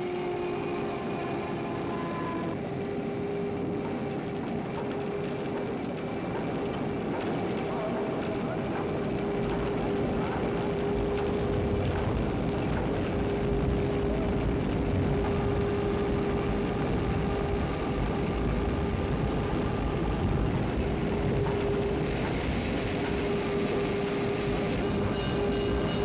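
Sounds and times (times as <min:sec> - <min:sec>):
electric winches droning: 0:00.0 - 0:05.2.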